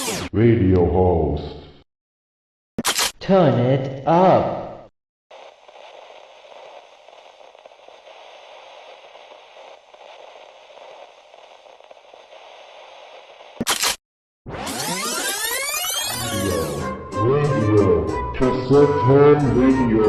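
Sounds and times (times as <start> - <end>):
radio static hiss: 5.3 - 14.0.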